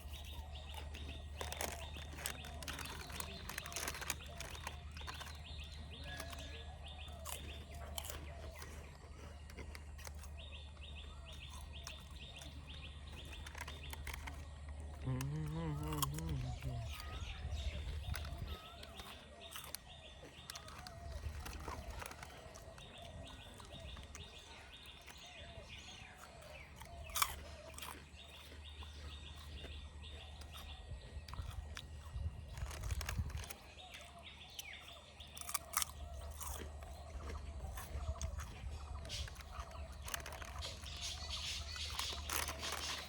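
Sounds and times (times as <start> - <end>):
birds calling: 0.0 - 43.0
crunching and chewing snacks: 0.0 - 43.0
insects chirping: 34.2 - 43.0.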